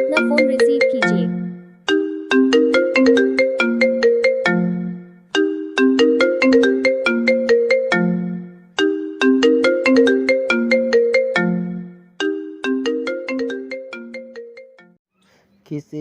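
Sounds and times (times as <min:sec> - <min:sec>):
phone ringtone melody: 0:00.0 - 0:15.0.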